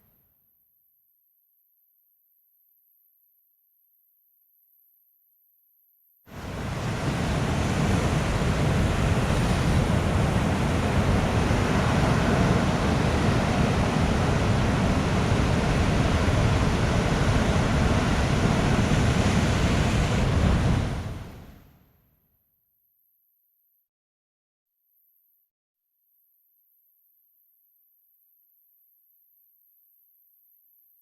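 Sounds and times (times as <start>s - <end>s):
heavy surf breaking: 6.3s - 21.6s
wind noise on microphone: 6.3s - 21.6s.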